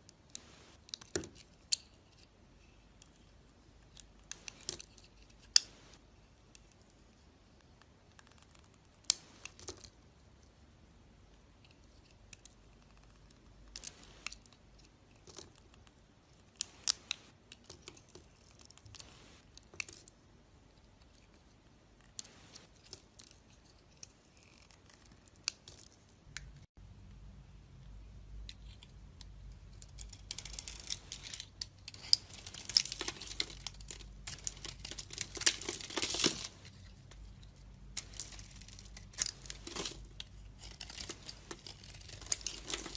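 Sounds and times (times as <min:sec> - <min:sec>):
blade cutting dried soap: 0:30.0 - 0:42.9.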